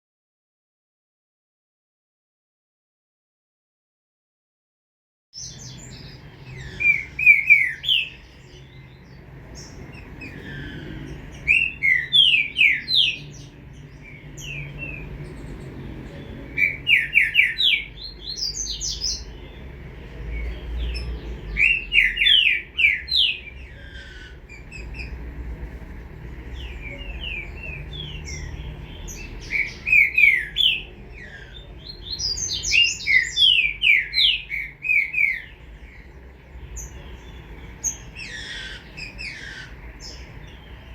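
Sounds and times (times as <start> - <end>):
faint low hum: 5.4 - 21.6, 22.8 - 33.4
bird singing: 5.4 - 40.9.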